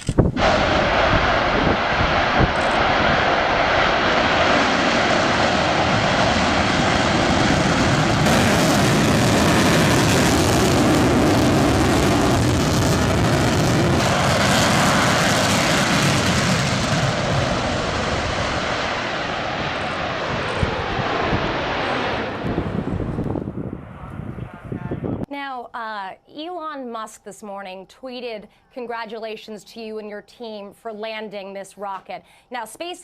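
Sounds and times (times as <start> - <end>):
rocket engine roaring: 0.0 - 25.3.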